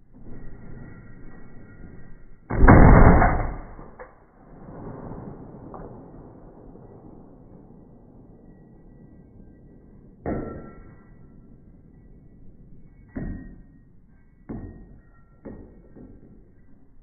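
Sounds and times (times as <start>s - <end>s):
gunshots with ringing decay: 2.5s - 9.4s.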